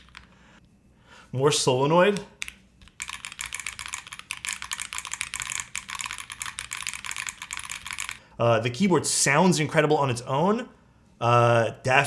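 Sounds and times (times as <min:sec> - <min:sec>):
mechanical keyboard typing: 0:02.4 - 0:08.2.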